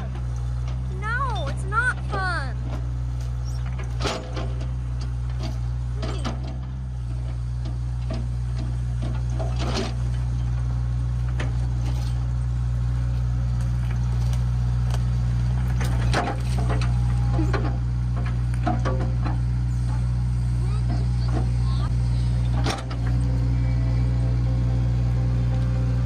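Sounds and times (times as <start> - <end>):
excavator arm clanking: 0.0 - 12.4, 15.5 - 20.2, 20.8 - 23.5
diesel engine running: 0.0 - 26.0.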